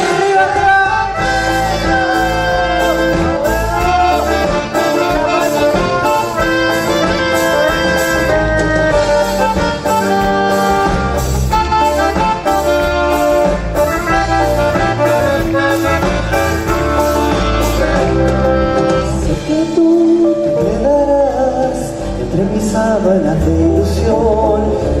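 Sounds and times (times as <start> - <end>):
person singing: 0.0 - 11.0, 17.1 - 25.0
band playing latin pop: 0.0 - 25.0.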